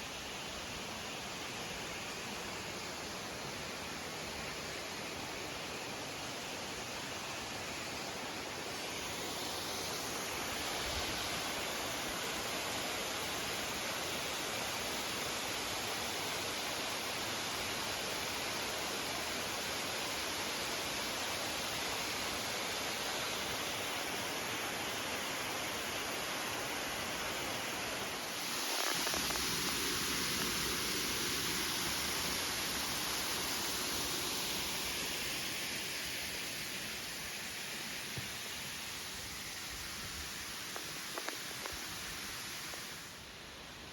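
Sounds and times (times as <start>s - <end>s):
waterfall rushing: 23.5s - 43.2s.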